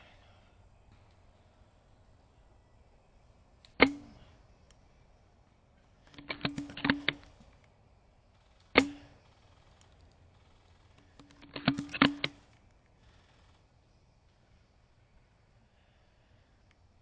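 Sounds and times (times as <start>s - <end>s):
airsoft rifle shot: 3.7s - 4.3s, 6.0s - 7.5s, 8.4s - 13.6s
rifle bolt clicking: 6.1s - 7.4s, 11.0s - 12.6s.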